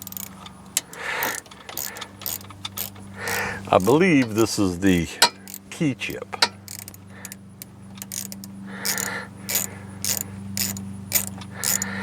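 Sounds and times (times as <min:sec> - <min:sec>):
ratchet wrench clicking: 0:00.0 - 0:12.0
steady low hum: 0:00.0 - 0:12.0.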